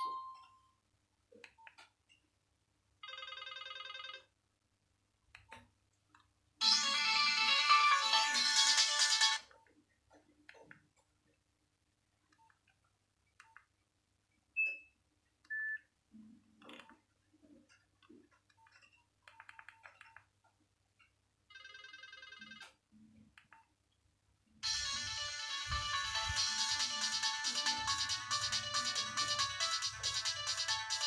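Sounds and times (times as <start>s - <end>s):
monophonic ringtone tones: 3.0s - 4.3s, 21.5s - 22.6s, 24.6s - 31.0s.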